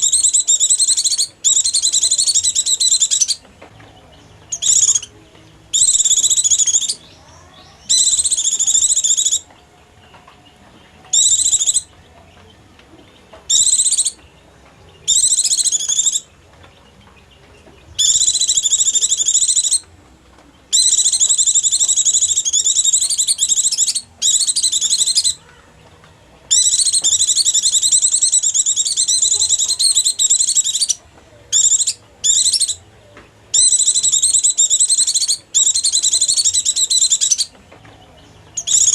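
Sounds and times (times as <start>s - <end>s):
bird twittering chatter: 0.0s - 3.4s, 4.4s - 5.1s, 5.7s - 9.5s, 11.1s - 12.0s, 13.4s - 14.2s, 15.0s - 16.3s, 17.9s - 19.9s, 20.7s - 25.7s, 26.5s - 32.8s, 33.5s - 38.9s.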